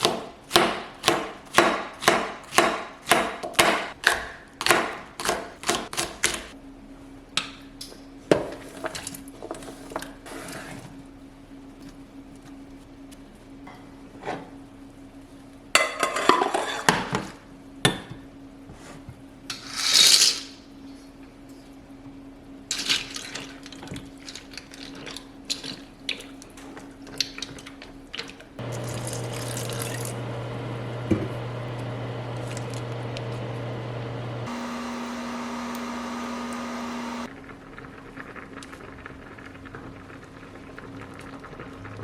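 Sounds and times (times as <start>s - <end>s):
appliance hum: 0.0s - 42.0s
dishes and utensils clattering: 15.8s - 17.3s
running tap water: 28.6s - 30.4s.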